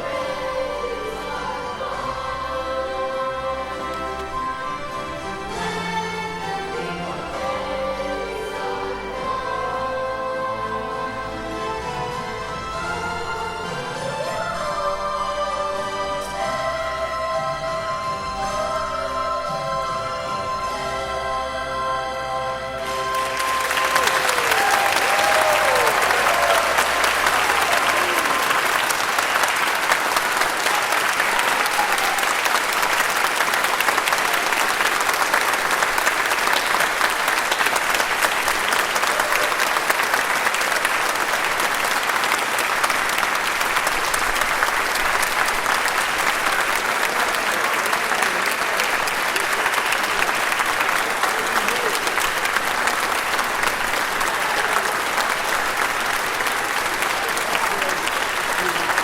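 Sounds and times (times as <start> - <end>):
music: 0.0 - 59.0
audience applauding: 22.8 - 59.0.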